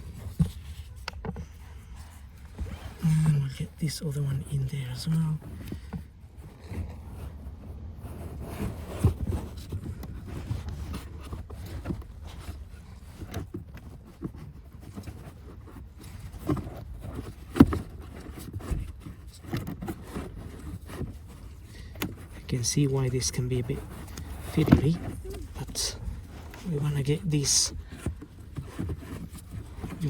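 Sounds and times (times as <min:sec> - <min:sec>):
filter scraping and knocking in plastic housing: 0:23.6 - 0:26.7.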